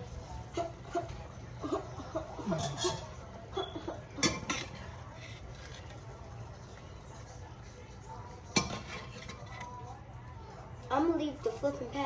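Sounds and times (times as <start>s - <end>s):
metal utensil clinking on frying pan: 4.2s - 4.9s.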